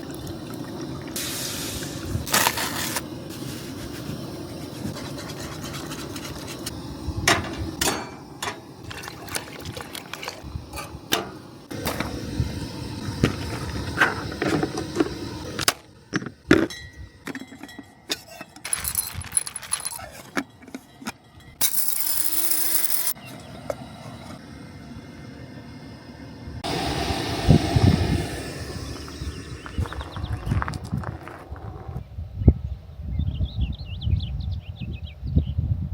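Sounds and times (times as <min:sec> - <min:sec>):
steady gas hiss: 0:00.0 - 0:08.9, 0:10.4 - 0:16.0, 0:24.7 - 0:30.6
utensils and cookware clinking: 0:07.3 - 0:08.7, 0:16.2 - 0:23.2.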